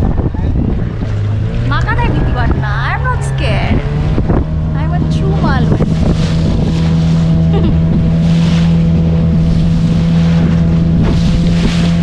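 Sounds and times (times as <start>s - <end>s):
motorboat engine running: 0.0s - 12.0s
wind and water rushing: 0.0s - 12.0s.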